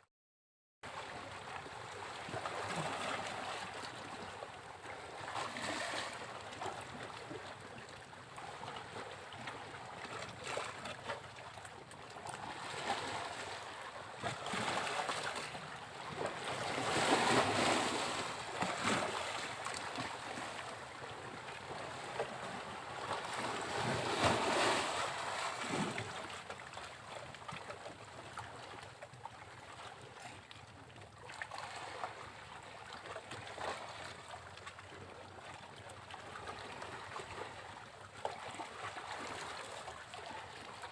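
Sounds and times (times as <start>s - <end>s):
sea waves breaking on beach: 5.1s - 7.0s, 12.2s - 26.6s.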